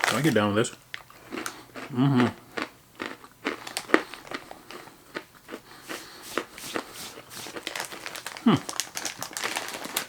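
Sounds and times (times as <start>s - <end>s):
pretzels crunching being chewed: 0.0s - 0.4s, 1.0s - 10.0s
snack bag crinkling: 0.0s - 1.6s, 3.0s - 4.8s, 5.5s - 10.0s.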